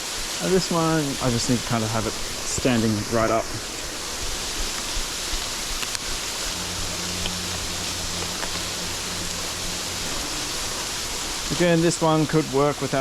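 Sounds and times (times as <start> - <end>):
waterfall rushing: 0.0 - 13.0
faint low hum: 1.0 - 12.6
faint clicks: 4.5 - 10.8.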